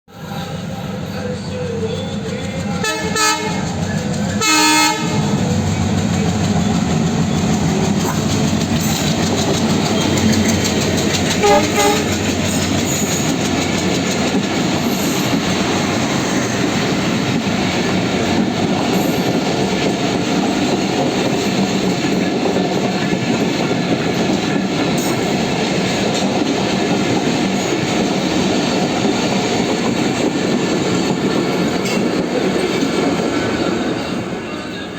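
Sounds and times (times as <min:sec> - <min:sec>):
train wheels clattering on rails: 0:01.6 - 0:34.7
train horn blasts: 0:02.8 - 0:03.7, 0:04.4 - 0:05.4, 0:11.4 - 0:12.3.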